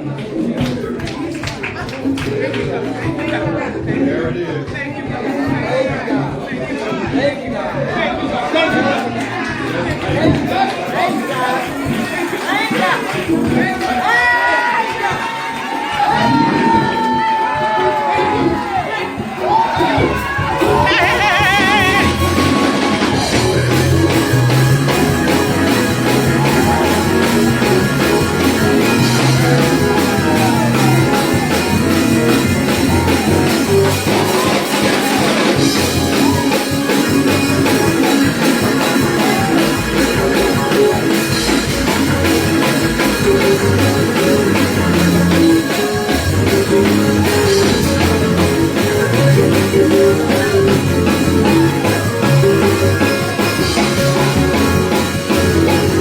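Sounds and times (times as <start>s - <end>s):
praise band music: 0.0s - 56.0s
person singing: 20.6s - 45.9s.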